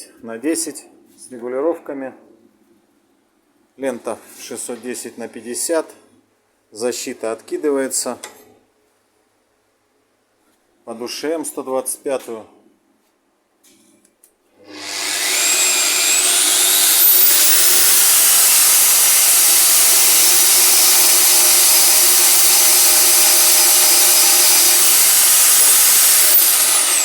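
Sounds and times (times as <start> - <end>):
angle grinder whining: 14.7 - 27.0.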